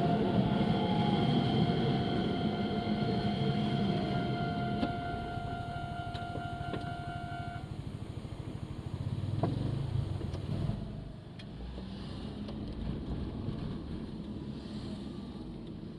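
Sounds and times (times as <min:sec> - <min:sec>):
level crossing alarm tone: 0:00.0 - 0:07.6
road vehicle engines: 0:00.0 - 0:15.9.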